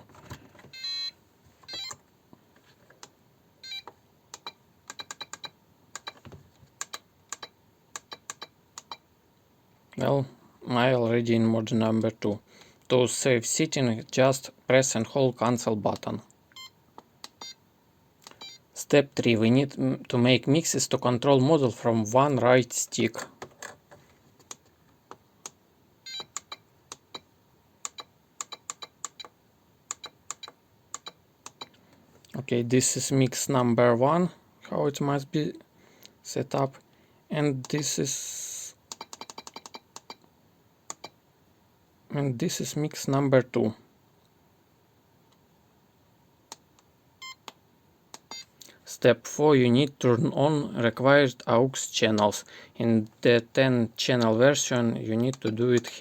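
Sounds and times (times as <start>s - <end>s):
transmitter buttons clicking: 3.8s - 9.0s, 25.4s - 31.8s, 38.9s - 40.3s, 55.2s - 55.9s.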